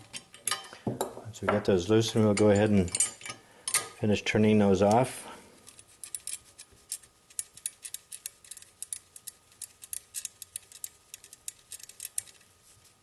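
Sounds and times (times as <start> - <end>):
ratchet clicking: 6.0 - 12.4.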